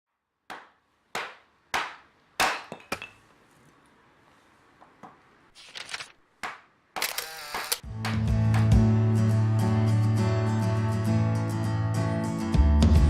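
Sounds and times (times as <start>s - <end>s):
brief rustle: 5.5s - 6.2s.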